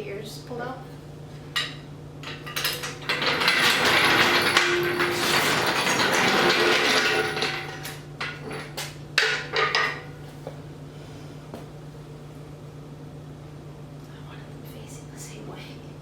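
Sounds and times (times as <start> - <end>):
metal knocks and clanks: 1.6 - 10.2
metal clattering and rattling: 2.2 - 10.1.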